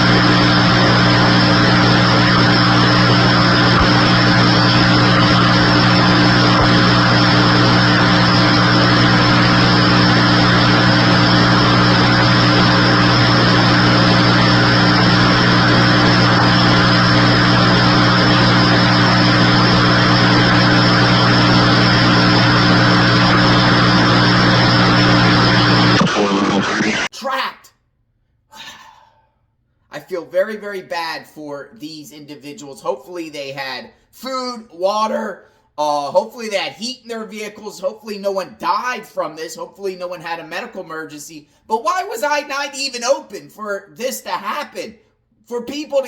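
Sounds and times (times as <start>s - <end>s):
engine drone: 0.0s - 27.1s.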